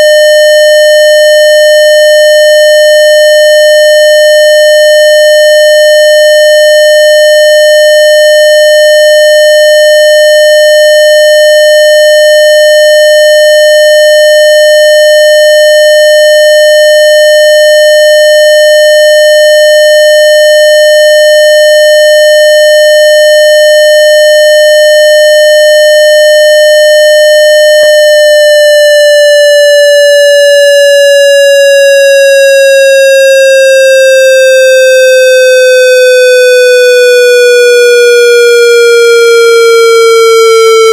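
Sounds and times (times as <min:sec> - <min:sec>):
synthesized siren tone: 0:00.0 - 0:00.7, 0:26.2 - 0:40.9.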